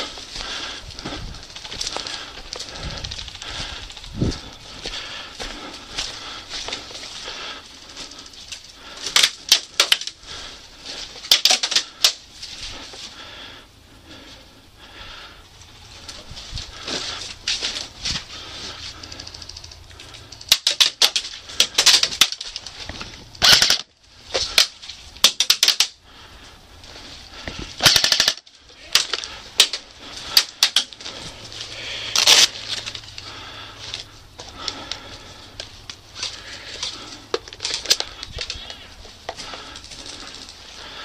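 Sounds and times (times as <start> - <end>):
airsoft guns firing: 23.4 - 23.9, 27.8 - 29.7.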